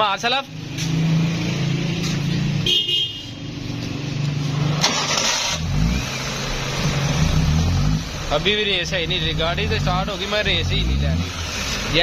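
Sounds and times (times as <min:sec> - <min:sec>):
petrol engine cranking and running: 0:04.7 - 0:12.0.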